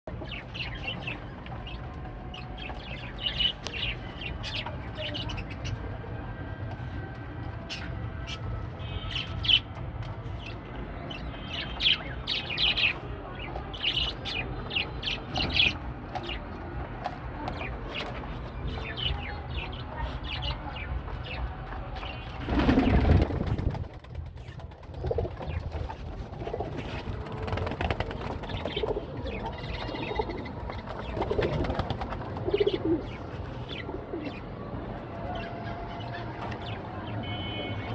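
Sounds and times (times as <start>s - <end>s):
loud flurry of wing flaps: 22.4s - 25.9s
pigeons cooing: 25.0s - 34.5s.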